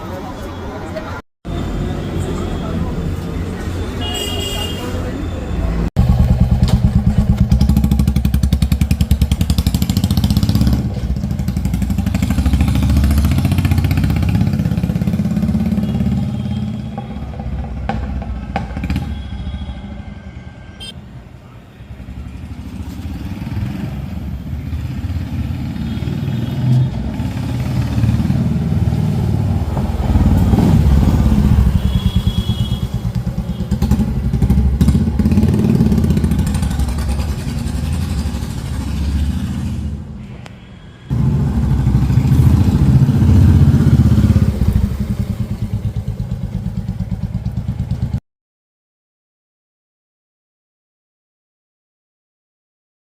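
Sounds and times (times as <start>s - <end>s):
motorcycle engine exhaust thumping: 6.0s - 12.6s, 16.9s - 19.2s, 29.6s - 37.9s.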